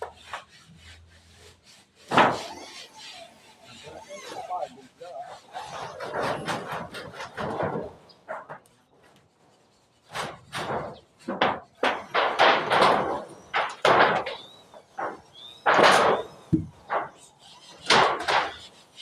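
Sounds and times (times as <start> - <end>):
knocks and bangs on wood: 2.1 - 2.6, 6.0 - 8.6, 10.1 - 17.2, 17.8 - 18.7.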